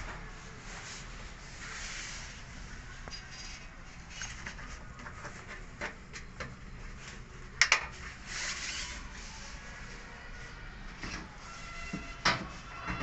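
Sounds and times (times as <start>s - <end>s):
parts scraping and clicking: 3.0s - 9.0s.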